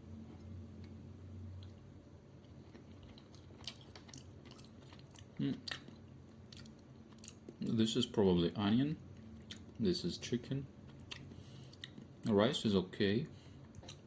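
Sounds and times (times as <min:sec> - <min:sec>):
person chewing food: 0:00.2 - 0:07.7, 0:09.1 - 0:09.8, 0:10.8 - 0:12.3, 0:13.6 - 0:14.0.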